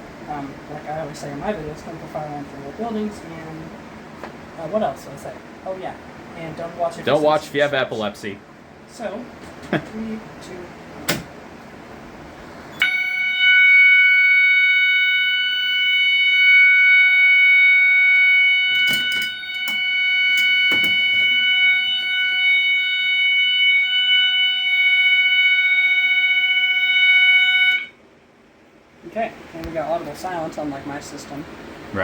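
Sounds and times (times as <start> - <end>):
fire alarm horn steady tone: 12.8 - 28.0.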